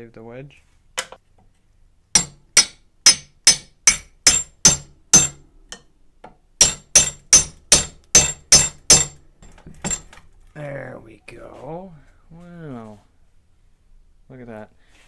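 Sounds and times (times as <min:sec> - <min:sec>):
hammer striking metal: 0:02.2 - 0:05.9, 0:06.6 - 0:09.2, 0:09.8 - 0:10.1.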